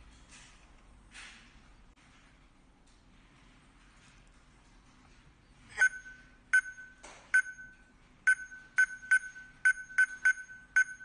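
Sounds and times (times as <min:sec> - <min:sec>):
keypad short beeps: 0:05.8 - 0:11.0.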